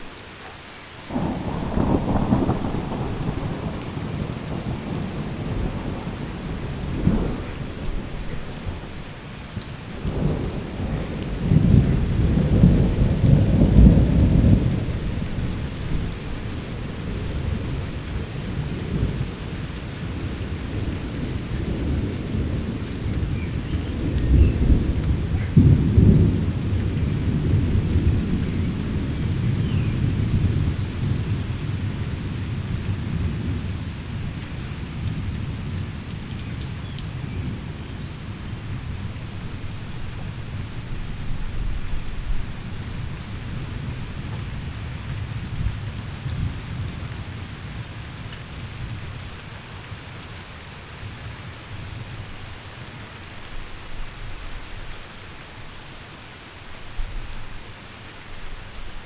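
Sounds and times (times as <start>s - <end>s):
heavy rain pouring: 0.0s - 59.0s
deep roll of thunder: 1.1s - 9.2s, 10.0s - 34.2s.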